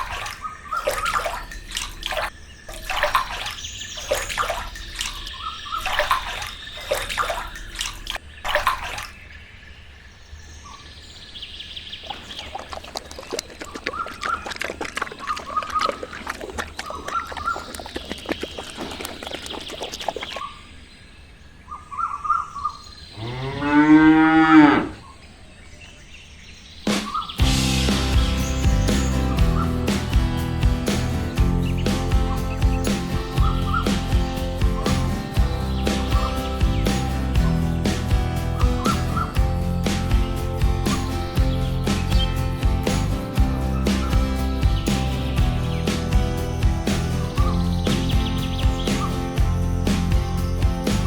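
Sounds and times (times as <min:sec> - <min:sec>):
cow mooing: 0:23.2 - 0:25.0.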